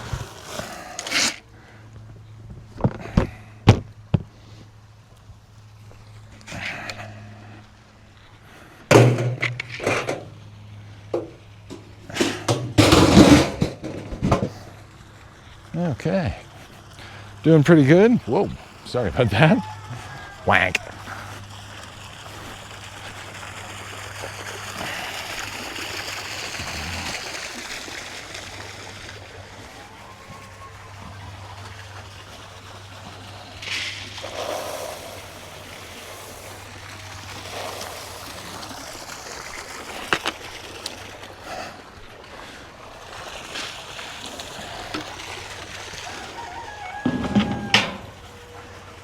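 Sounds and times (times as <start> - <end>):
water running and splashing: 0.0 - 2.0, 14.6 - 49.0.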